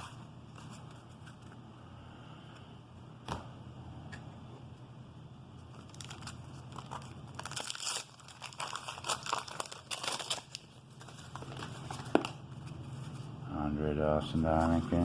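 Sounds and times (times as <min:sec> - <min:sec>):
wax-paper wrapper crinkling and tearing: 0:05.7 - 0:13.4.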